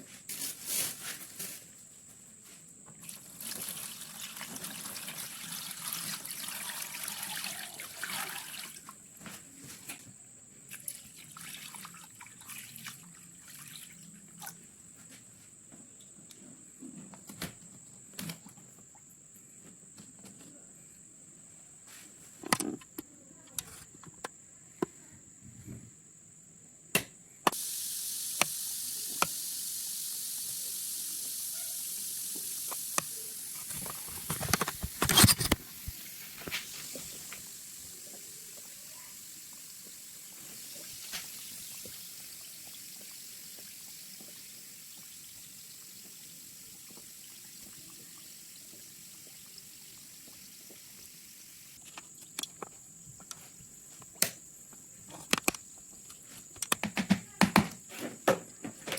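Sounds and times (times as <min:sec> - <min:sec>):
steady hiss: 0:27.4 - 0:56.8.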